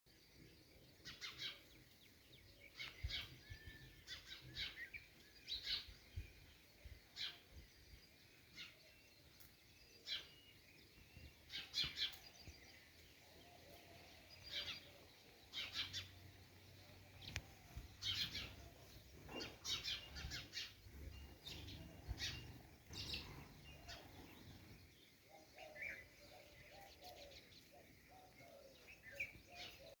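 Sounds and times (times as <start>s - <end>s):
birds chirping with echo: 0.1s - 30.0s.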